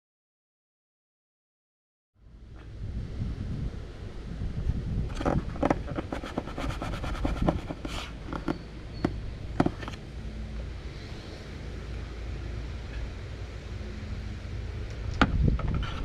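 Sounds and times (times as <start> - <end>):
low wind rumble on microphone: 2.2 - 16.0
short rustle: 5.1 - 8.5.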